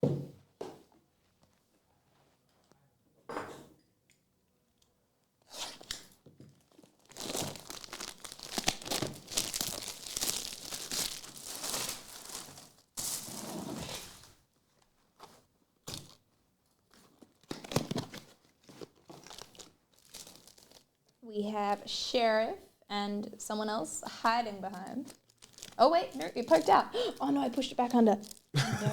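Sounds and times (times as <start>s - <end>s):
plastic wrapping tearing and crinkling: 5.7s - 14.3s, 15.8s - 21.2s, 24.7s - 28.5s.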